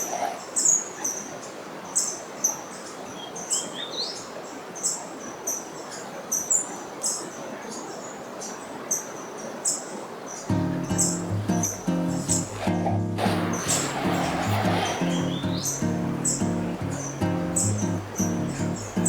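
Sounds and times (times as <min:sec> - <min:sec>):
outdoor background hiss: 0:00.0 - 0:19.0
bird chirping: 0:10.3 - 0:19.0
music: 0:10.5 - 0:19.0.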